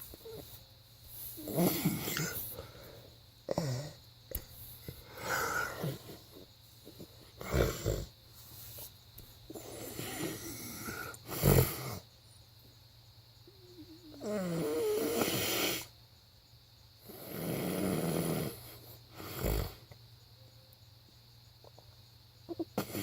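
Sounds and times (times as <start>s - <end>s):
person snoring: 1.4s - 4.0s, 5.0s - 6.2s, 7.4s - 8.1s, 9.5s - 12.0s, 14.2s - 15.9s, 17.2s - 18.6s.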